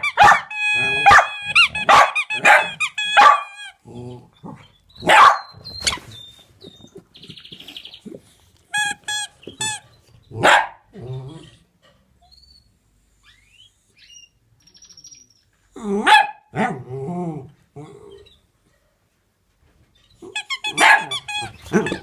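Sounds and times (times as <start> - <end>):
dog barking: 0.0 - 3.6, 5.0 - 5.6, 10.4 - 10.9, 16.0 - 16.8, 20.7 - 22.0
dog yelping: 0.0 - 6.1, 9.7 - 10.9, 20.2 - 22.0.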